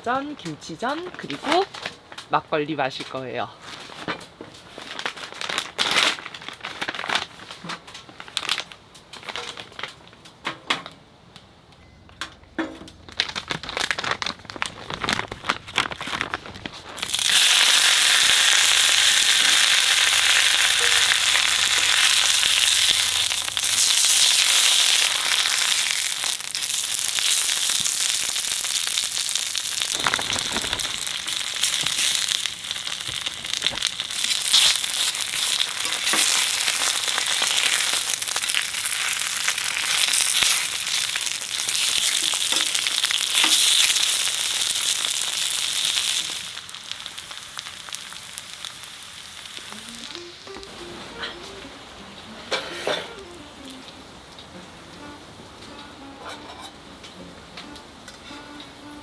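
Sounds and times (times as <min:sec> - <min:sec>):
batter sizzling in hot oil: 0:17.0 - 0:50.6
cooking clicks and knocks: 0:29.7 - 0:36.8.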